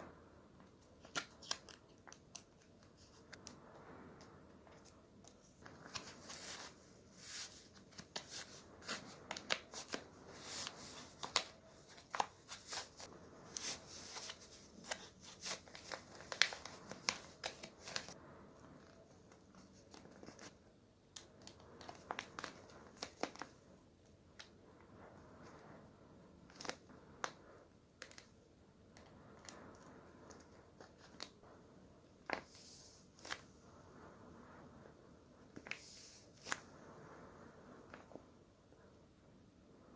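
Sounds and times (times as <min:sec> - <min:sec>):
paper crinkling and rustling: 0:01.0 - 0:03.6, 0:04.6 - 0:18.2, 0:18.8 - 0:20.6, 0:21.4 - 0:23.6.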